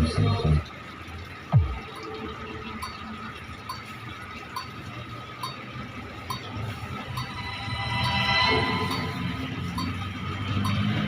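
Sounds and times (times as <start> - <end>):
cowbell-like tick: 3.6 - 11.0
steady high tone: 5.4 - 11.0.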